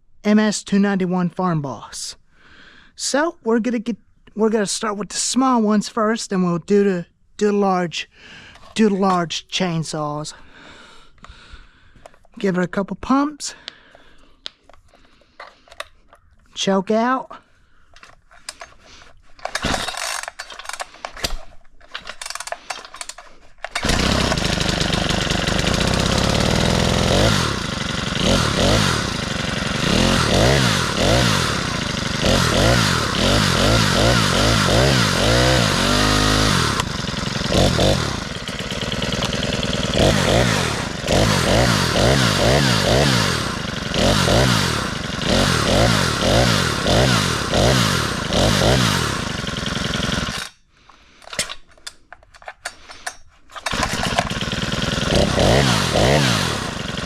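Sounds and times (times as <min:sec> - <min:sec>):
chainsaw engine revving: 0:19.5 - 0:21.0, 0:22.2 - 0:50.5, 0:53.6 - 0:57.0.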